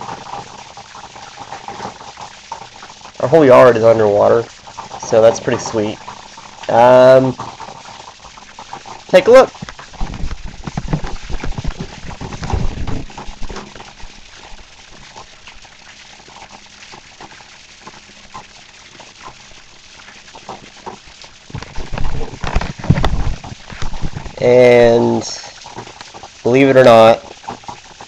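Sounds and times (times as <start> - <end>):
heavy rain falling: 0.0 - 28.0
low bumps: 9.5 - 14.2.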